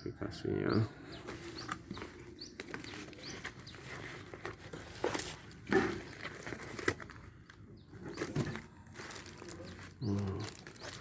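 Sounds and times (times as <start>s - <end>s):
bird chirps: 0.0s - 4.4s
packaging rustling and knocking: 1.3s - 7.3s, 8.0s - 11.0s.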